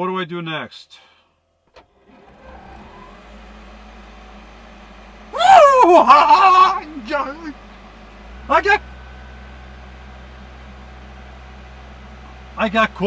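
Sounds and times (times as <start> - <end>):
air conditioner humming: 4.4 - 11.1.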